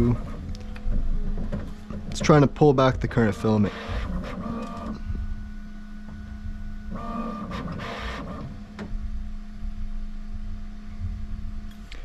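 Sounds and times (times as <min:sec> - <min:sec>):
feeder motor whining: 0:00.0 - 0:08.6
steady hum: 0:00.0 - 0:12.0.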